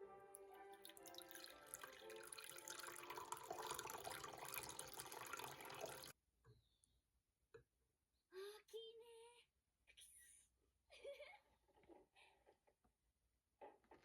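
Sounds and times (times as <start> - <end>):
water running from tap into sink: 0.8 - 6.1.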